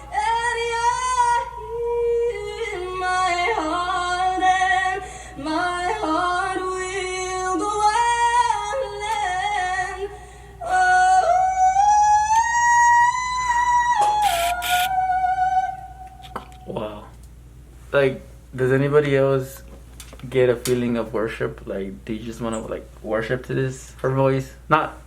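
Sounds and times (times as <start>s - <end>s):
woman singing: 0.0s - 16.7s.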